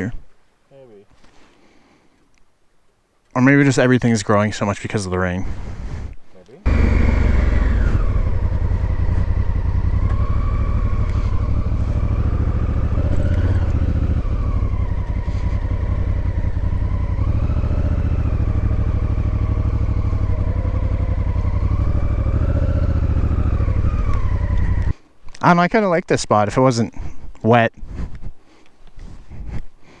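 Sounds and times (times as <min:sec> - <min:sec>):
motorcycle engine running: 0:06.7 - 0:24.9.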